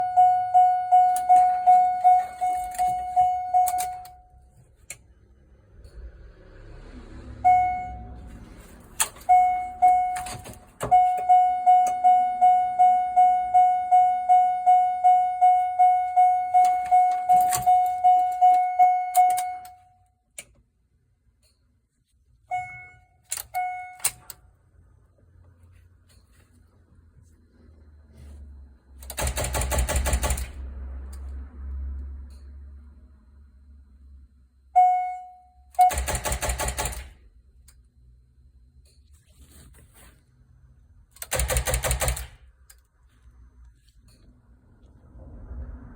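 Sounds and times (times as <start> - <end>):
car warning chime: 0.0 - 4.6, 7.4 - 8.4, 9.0 - 20.1, 22.5 - 24.4, 34.7 - 37.0.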